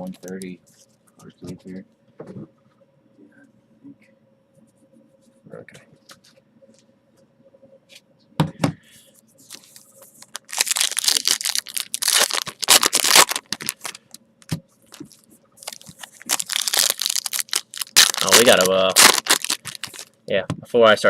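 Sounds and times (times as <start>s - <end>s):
card wrappers tearing and crinkling: 9.5s - 14.2s, 14.9s - 20.1s.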